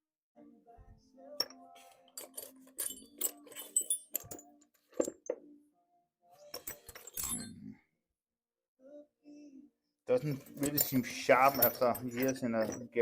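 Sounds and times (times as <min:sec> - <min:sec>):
metal tool bits clinking: 0:01.4 - 0:05.3, 0:06.5 - 0:07.6, 0:10.2 - 0:13.0.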